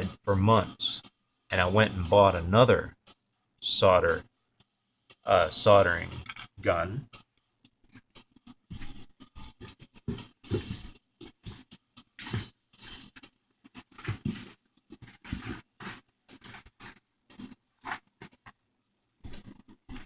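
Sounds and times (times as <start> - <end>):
rustling: 12.2 - 18.6.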